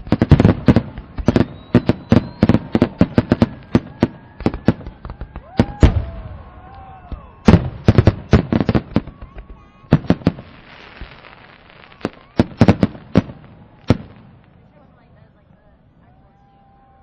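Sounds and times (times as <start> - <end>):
fireworks bangs and crackles: 0.0 - 17.0
firework whistle: 1.2 - 13.8.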